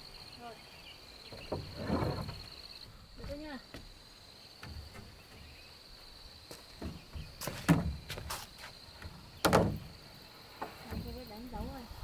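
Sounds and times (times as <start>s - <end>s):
high insect drone: 0.0s - 12.0s
timber knocking and clattering: 1.3s - 2.6s, 4.6s - 5.6s, 6.6s - 11.8s.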